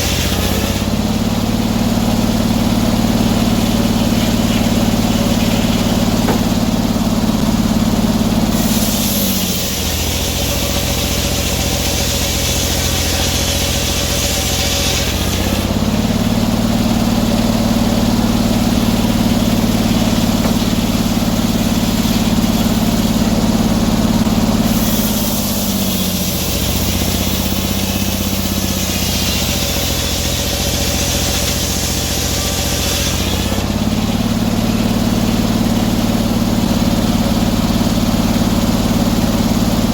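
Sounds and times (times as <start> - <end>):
saw blade cutting hiss: 0.0 - 0.8, 3.4 - 6.6, 8.5 - 15.7, 24.5 - 33.6
sawmill engine bogging down: 0.0 - 39.9.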